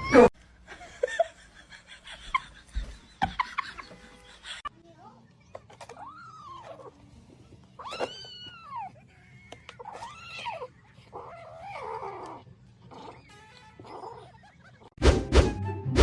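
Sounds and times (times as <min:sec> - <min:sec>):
cat meowing: 0:07.8 - 0:14.4.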